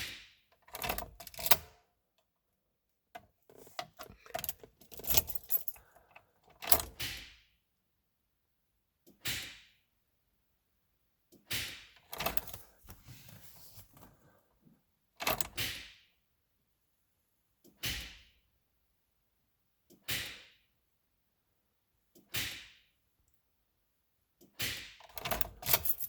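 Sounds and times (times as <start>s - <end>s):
car ignition key clicks: 3.7s - 5.9s.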